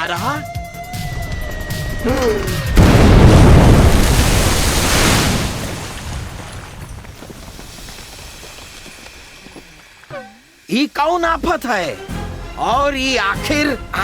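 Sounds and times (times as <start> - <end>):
cartoon explosion blast: 2.0 - 6.8.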